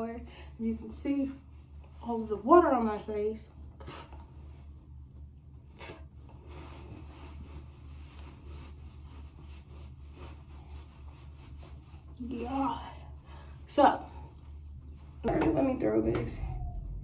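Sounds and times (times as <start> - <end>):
steady low hum: 0.0 - 17.0
rubbing and handling noises: 0.8 - 13.2.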